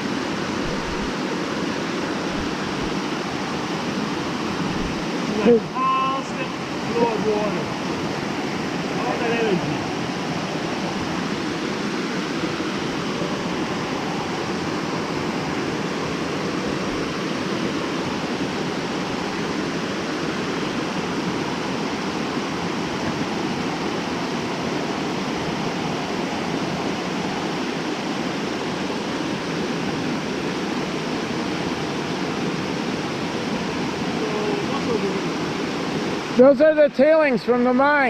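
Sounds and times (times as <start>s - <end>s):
river water rushing: 0.0s - 38.0s.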